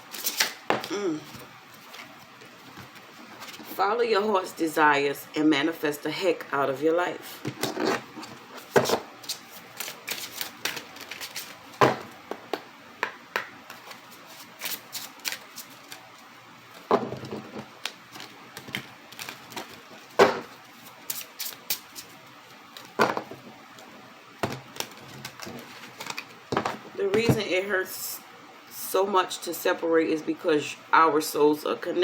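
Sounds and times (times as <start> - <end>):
cards being shuffled: 0.1 - 3.7, 7.5 - 11.8, 13.6 - 23.0.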